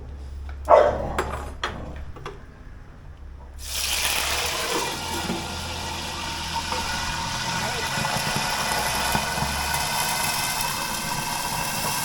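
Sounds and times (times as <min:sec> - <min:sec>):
deep-frying oil sizzling: 0:03.6 - 0:12.0.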